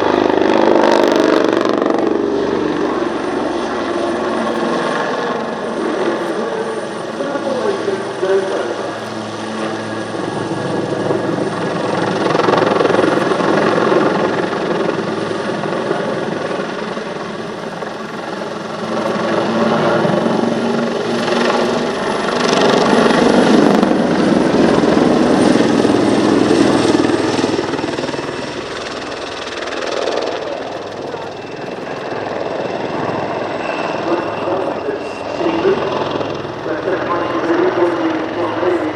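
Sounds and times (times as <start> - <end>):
helicopter rotor and turbine: 0.0 - 38.9.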